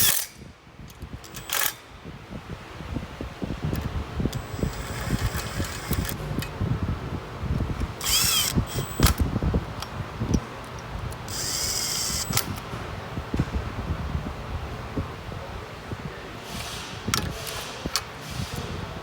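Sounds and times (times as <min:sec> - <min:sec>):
tools and metal parts clinking: 0:00.0 - 0:01.8
power drill whining: 0:01.2 - 0:01.8, 0:03.8 - 0:06.3, 0:07.6 - 0:09.6, 0:11.0 - 0:12.6.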